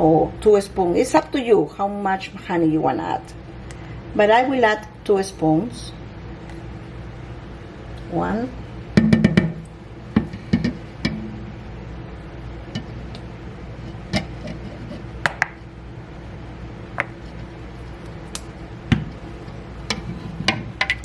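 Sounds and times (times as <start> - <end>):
low hum: 5.7 - 21.0.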